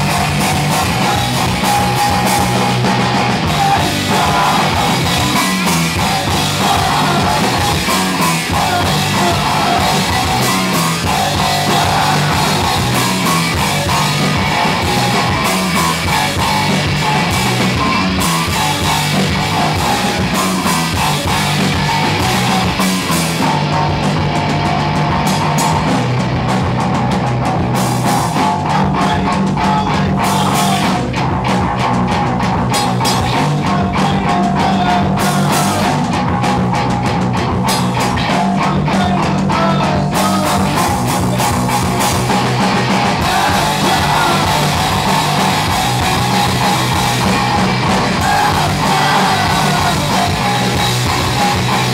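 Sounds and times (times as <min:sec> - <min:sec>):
live rock band playing: 0:00.0 - 0:51.9
drum hits: 0:40.9 - 0:51.9.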